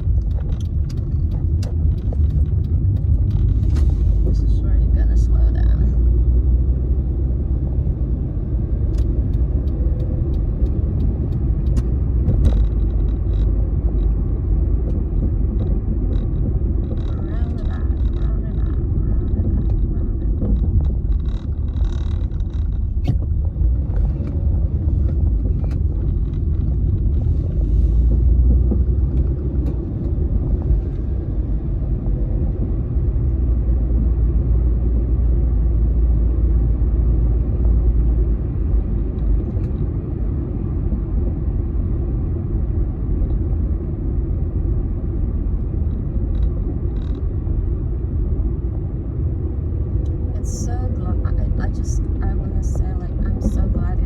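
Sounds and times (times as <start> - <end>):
faint clicks and knocks: 0.0 - 4.4, 8.9 - 31.1
engine and road rumble: 0.0 - 54.0.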